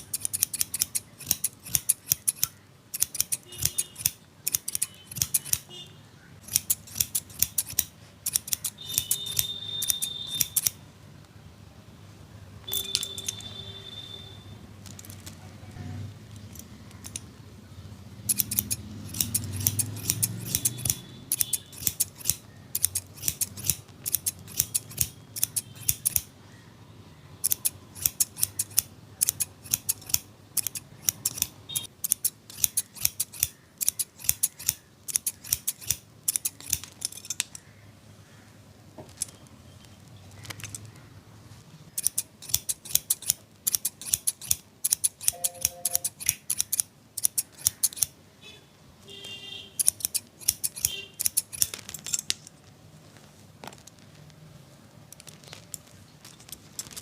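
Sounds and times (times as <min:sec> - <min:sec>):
scissors snipping hair: 0:00.0 - 0:05.7, 0:06.4 - 0:10.8, 0:16.4 - 0:17.3, 0:18.2 - 0:26.3, 0:27.4 - 0:37.8, 0:41.9 - 0:48.2, 0:49.8 - 0:52.4.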